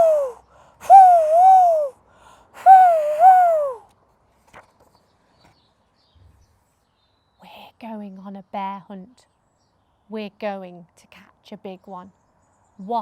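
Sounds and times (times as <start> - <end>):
woman imitating howling wind: 0.0 - 2.0, 2.6 - 3.8.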